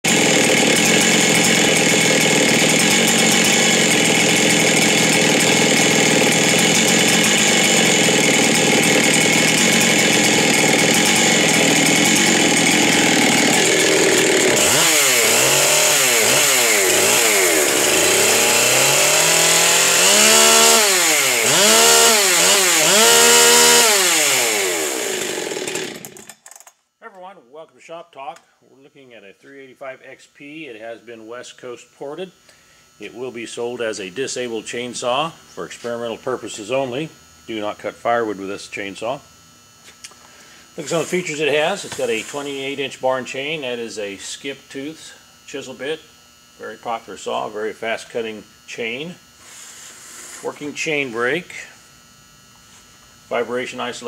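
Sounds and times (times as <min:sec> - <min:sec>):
chainsaw revving: 0:00.0 - 0:26.6, 0:40.0 - 0:43.8, 0:50.0 - 0:51.7.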